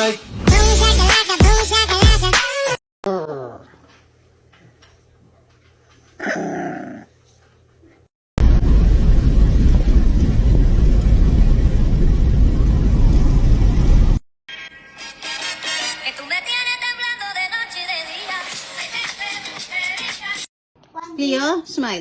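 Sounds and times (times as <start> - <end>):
dog vocalizing: 6.2 - 7.1
loud steady rumbling: 8.4 - 14.2.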